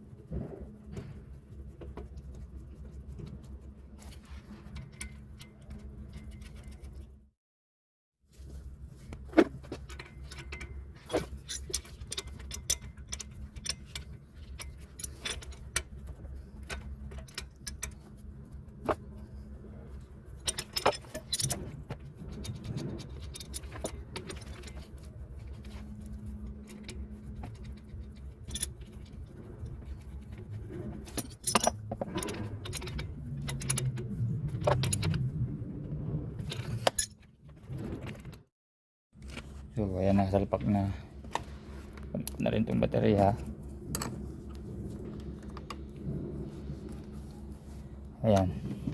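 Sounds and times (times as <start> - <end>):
steady low hum: 9.9 - 36.6, 39.2 - 48.9.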